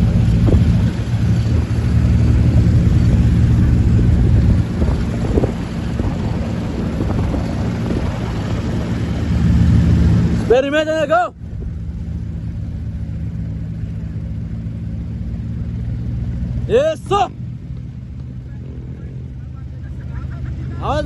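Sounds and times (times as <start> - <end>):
wind noise on microphone: 0.0 - 10.4
vehicle engine running: 0.0 - 21.0.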